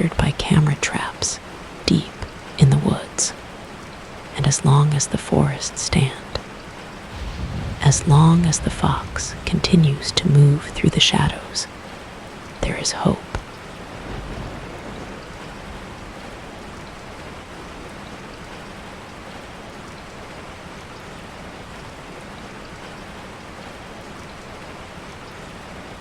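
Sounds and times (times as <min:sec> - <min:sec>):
rain falling: 0:00.0 - 0:26.0.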